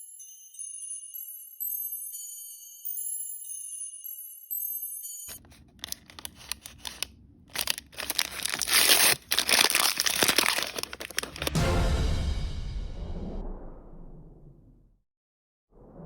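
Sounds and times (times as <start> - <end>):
plastic packaging crinkling and tearing: 5.4 - 11.6.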